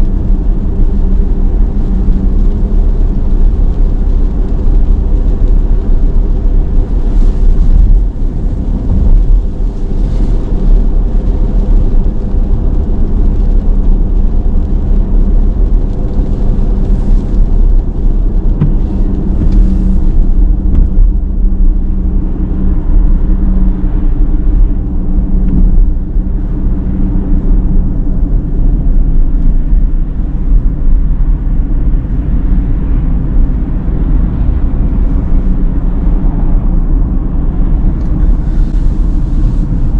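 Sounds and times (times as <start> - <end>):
low road rumble in car cabin: 0.0 - 39.9
brief hissing of wet road: 18.5 - 20.6, 38.0 - 39.9.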